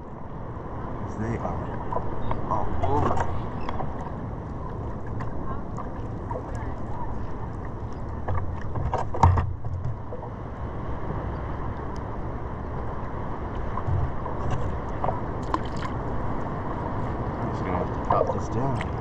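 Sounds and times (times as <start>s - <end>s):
water sloshing around surfboard: 1.7s - 10.4s, 12.5s - 19.0s.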